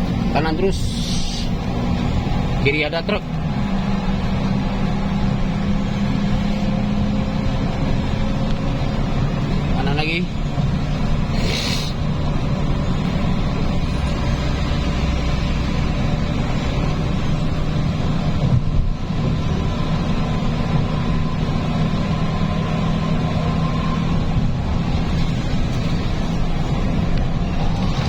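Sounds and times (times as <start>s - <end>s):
heavy vehicle engine and road noise: 0.0s - 28.0s.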